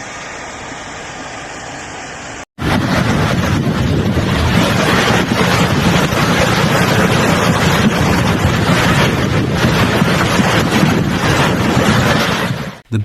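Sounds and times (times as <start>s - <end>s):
floodwater rushing: 2.6s - 12.8s
wind buffeting microphone: 2.6s - 12.8s.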